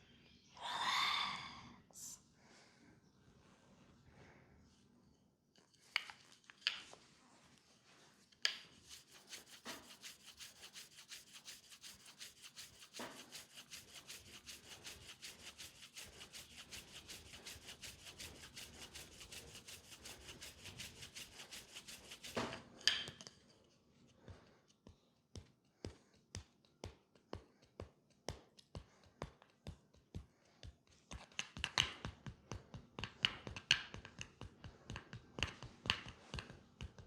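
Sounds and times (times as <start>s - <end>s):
hands rubbing over leg: 7.8s - 22.6s.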